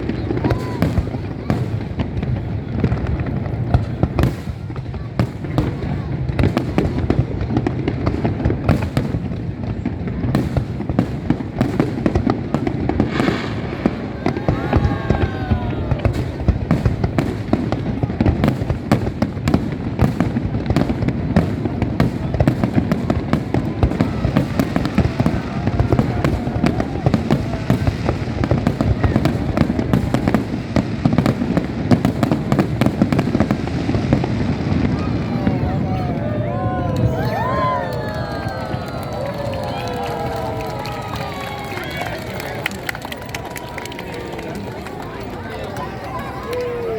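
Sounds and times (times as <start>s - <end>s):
fireworks bangs and crackles: 0.0s - 46.9s
whistling fireworks: 0.0s - 46.9s.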